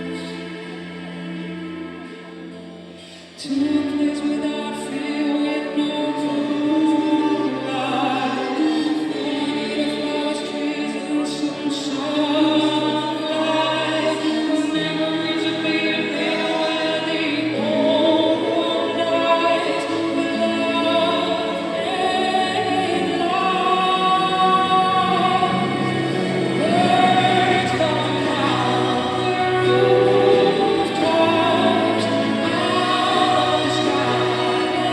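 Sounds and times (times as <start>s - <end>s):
choir-like backing vocals: 0.0s - 34.9s
woman singing lead: 0.0s - 34.9s
instrumental accompaniment: 17.1s - 34.9s.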